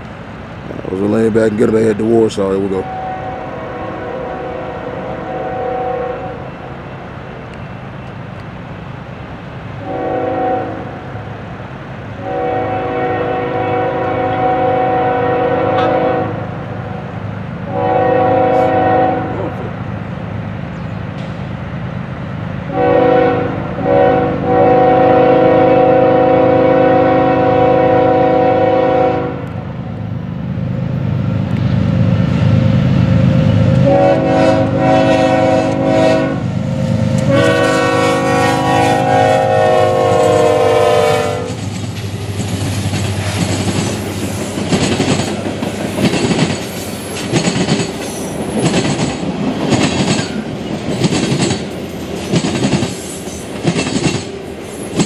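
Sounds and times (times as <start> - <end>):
diesel locomotive running: 0.0 - 55.0
locomotive air horn blasts: 2.8 - 6.7, 9.8 - 11.0, 12.2 - 17.0, 17.7 - 19.6, 22.7 - 29.5, 33.8 - 41.6.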